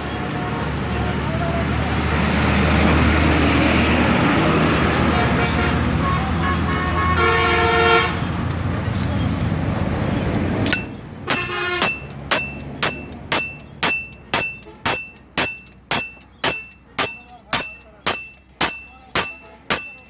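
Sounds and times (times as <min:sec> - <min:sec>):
hammer striking steel on anvil: 0:10.6 - 0:20.0.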